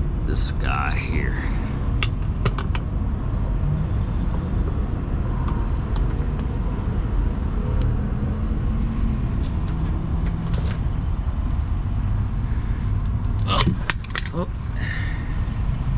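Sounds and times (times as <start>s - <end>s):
vehicle engine idling: 0.0s - 3.6s.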